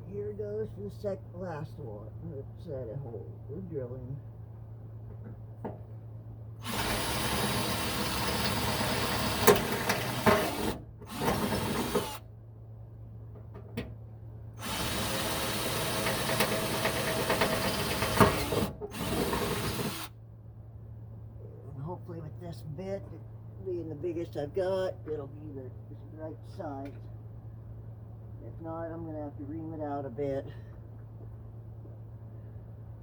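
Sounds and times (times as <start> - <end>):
power drill boring: 6.6 - 12.2, 14.6 - 20.1.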